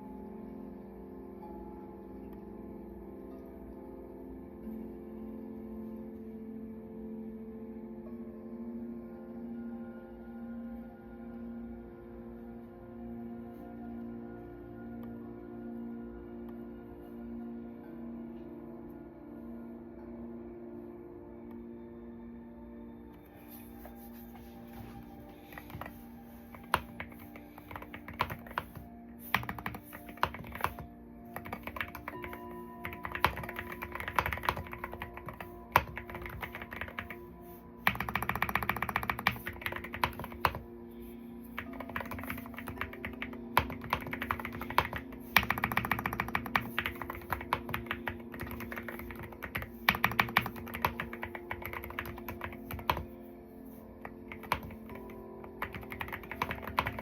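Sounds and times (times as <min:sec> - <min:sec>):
soft background music: 0:00.0 - 0:57.0
mechanical keyboard typing: 0:25.5 - 0:30.8, 0:31.4 - 0:37.2, 0:37.8 - 0:40.6, 0:41.6 - 0:53.1, 0:54.3 - 0:57.0.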